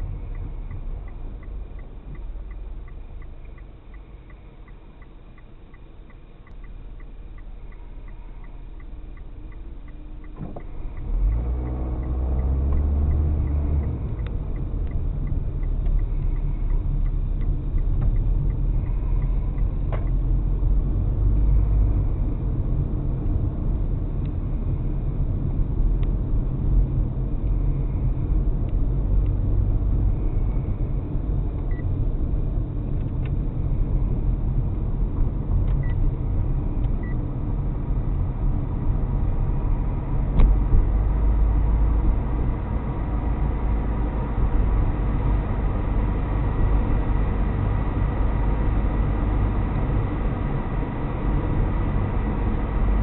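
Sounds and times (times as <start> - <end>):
faint regular ticking: 0.0 - 20.4
road rumble inside car: 0.0 - 53.0
car engine accelerating: 6.4 - 53.0.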